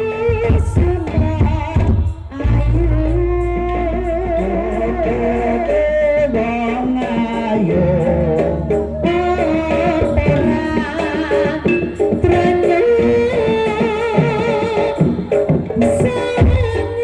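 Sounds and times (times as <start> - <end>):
deep bass: 0.0 - 13.5
instruments and percussion: 0.0 - 17.0
person singing: 0.0 - 17.0.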